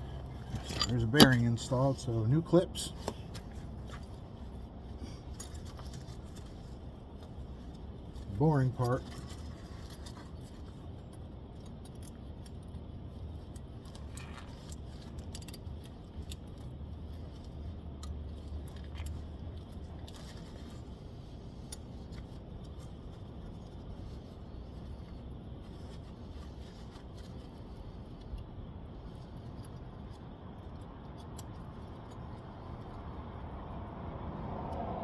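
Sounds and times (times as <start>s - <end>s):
steady low rumble: 0.0s - 35.0s
metal tools clinking: 0.1s - 3.3s.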